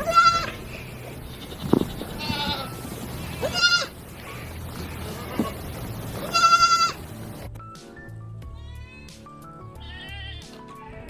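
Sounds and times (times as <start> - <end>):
goats bleating: 0.0 - 7.4, 8.5 - 9.2, 9.8 - 11.0
faint animal sounds: 0.0 - 7.5
background music: 0.0 - 11.0.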